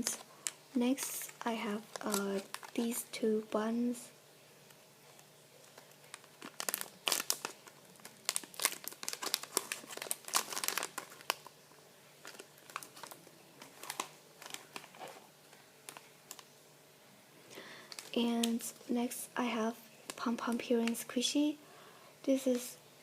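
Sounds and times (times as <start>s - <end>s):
plastic packaging crinkling: 0.0s - 3.2s, 4.7s - 16.6s, 17.6s - 18.8s, 20.0s - 21.2s.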